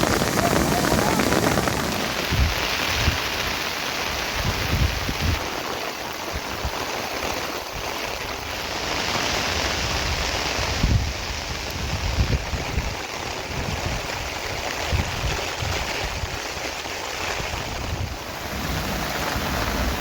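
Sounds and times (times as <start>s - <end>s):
wind bumps on microphone: 0.0s - 8.2s, 8.8s - 20.0s
steady rain: 0.0s - 20.0s.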